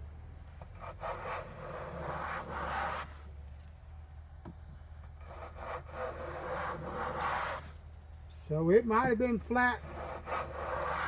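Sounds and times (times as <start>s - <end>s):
wood scraping strokes: 0.6s - 3.8s, 5.1s - 8.0s, 9.0s - 11.0s.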